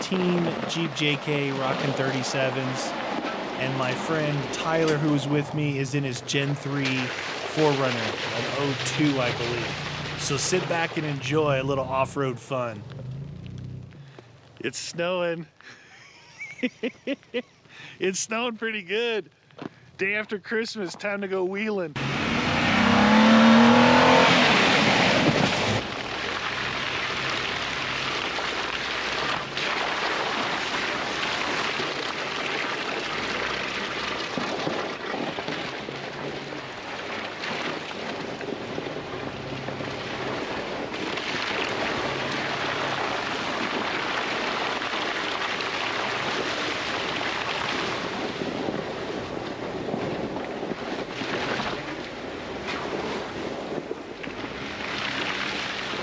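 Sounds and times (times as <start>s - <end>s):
engine revving: 7.6s - 14.3s, 22.0s - 28.4s
tyre and wind noise: 47.6s - 54.6s.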